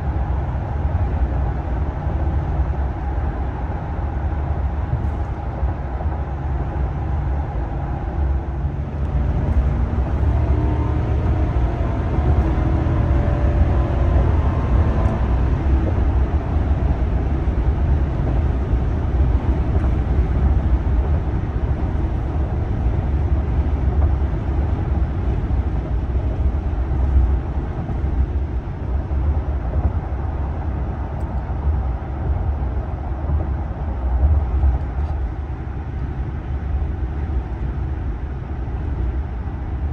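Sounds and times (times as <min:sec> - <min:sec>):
road and tyre noise: 0:00.0 - 0:39.9
engine running: 0:06.3 - 0:39.9.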